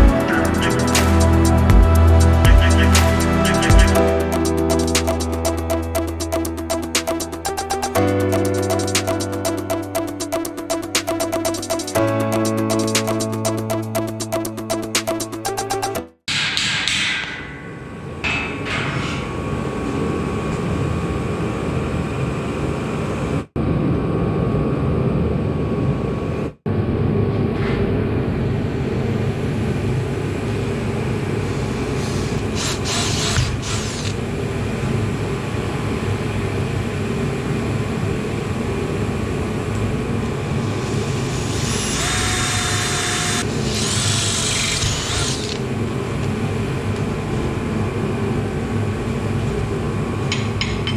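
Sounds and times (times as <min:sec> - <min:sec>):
power tool running: 0:32.0 - 0:34.2, 0:40.8 - 0:45.6.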